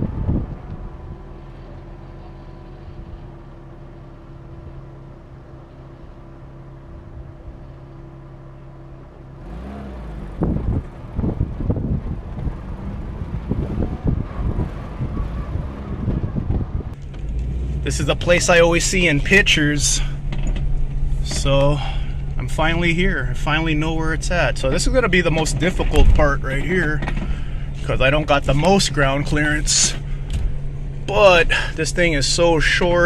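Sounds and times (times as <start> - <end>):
vehicle engine droning: 0.0 - 33.0.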